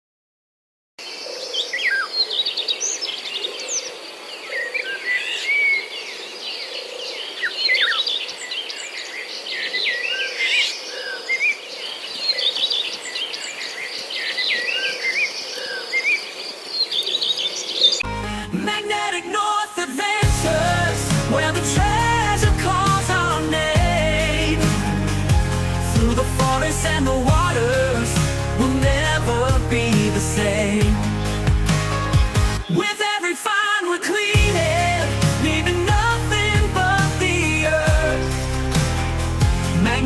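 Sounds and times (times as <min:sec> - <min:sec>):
steady high hiss: 0:18.1 - 0:40.0
birds chirping and whistling: 0:20.2 - 0:33.0.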